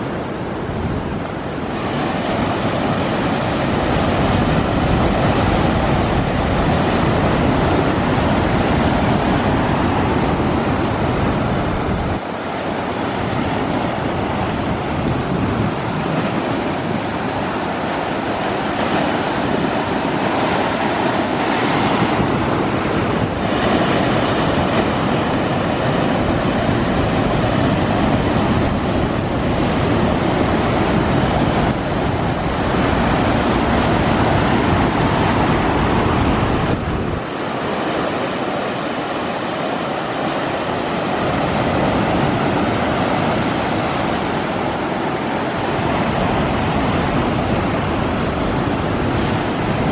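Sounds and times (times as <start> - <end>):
heavy surf breaking on shore: 0.0 - 49.9
wind buffeting microphone: 0.0 - 49.9.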